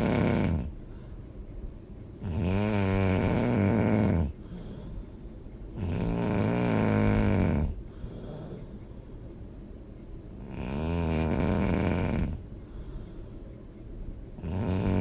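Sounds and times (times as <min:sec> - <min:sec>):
person snoring loudly: 0:00.0 - 0:00.7, 0:02.2 - 0:04.3, 0:05.8 - 0:07.8, 0:10.4 - 0:12.4, 0:14.4 - 0:15.0
quiet breathing: 0:00.0 - 0:09.7, 0:10.3 - 0:15.0.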